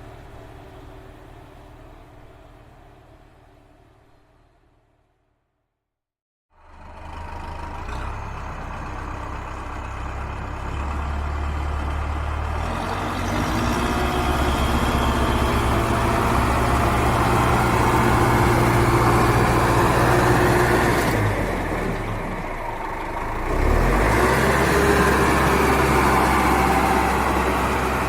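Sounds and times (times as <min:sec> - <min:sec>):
tractor engine revving: 0:07.0 - 0:28.0.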